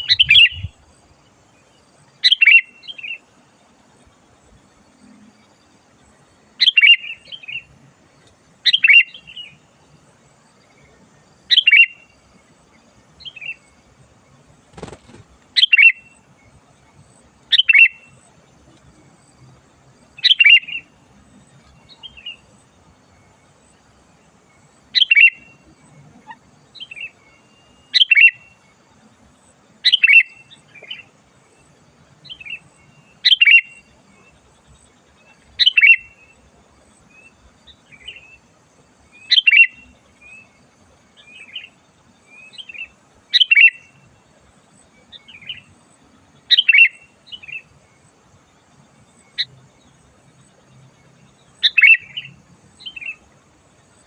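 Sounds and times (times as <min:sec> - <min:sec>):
bird singing bright phrases: 0:00.0 - 0:53.3.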